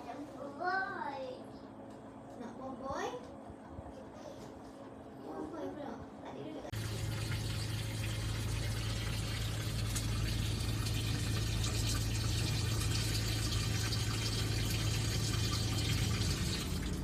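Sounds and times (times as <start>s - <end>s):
low hum: 0.0s - 17.0s
water running from a tap: 6.8s - 17.0s.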